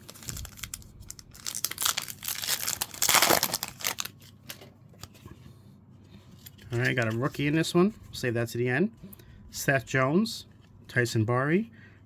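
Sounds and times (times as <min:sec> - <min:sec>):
wrapper crinkling and tearing: 0:00.0 - 0:04.7.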